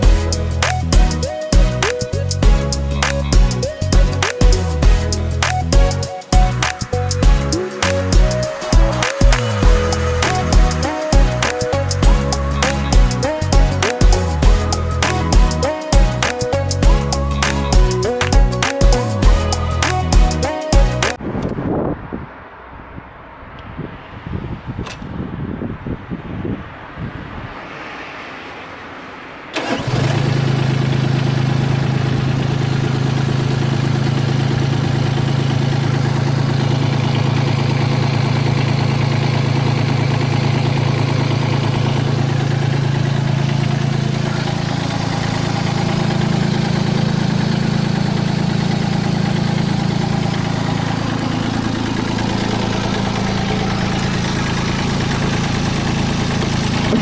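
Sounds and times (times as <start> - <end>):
diesel engine idling: 4.8 - 21.0, 30.4 - 57.0
diesel engine starting: 6.6 - 21.0, 29.4 - 57.0.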